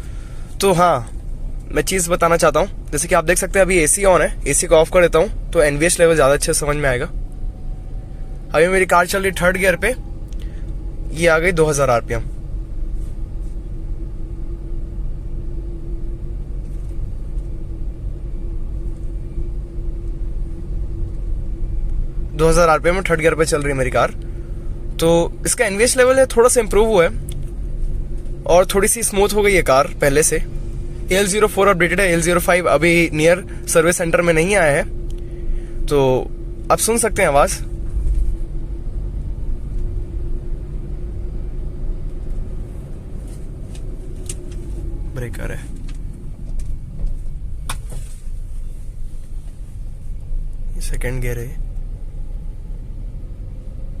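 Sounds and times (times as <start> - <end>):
car engine rumble in cabin: 0.0 - 54.0
road noise: 0.0 - 54.0.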